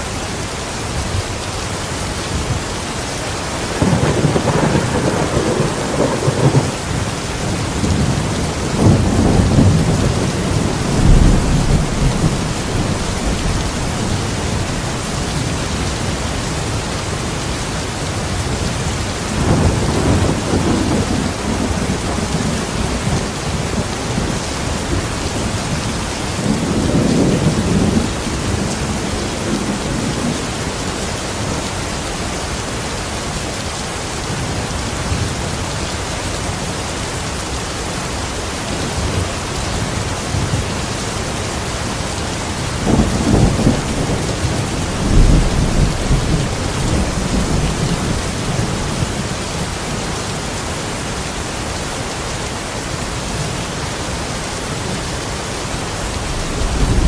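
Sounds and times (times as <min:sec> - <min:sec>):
heavy rain falling: 0:00.0 - 0:57.0
rolling thunder: 0:03.7 - 0:15.7, 0:19.3 - 0:30.5, 0:42.6 - 0:49.8, 0:56.0 - 0:57.0.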